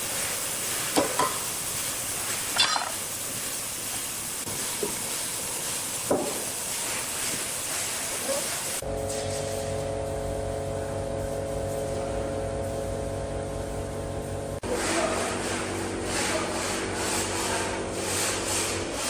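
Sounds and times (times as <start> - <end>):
sawmill hissing: 0.0 - 8.8.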